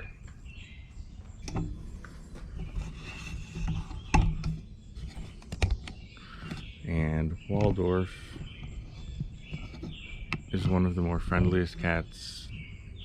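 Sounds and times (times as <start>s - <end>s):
sharp knocks and clicks: 3.6s - 6.8s, 8.4s - 11.8s.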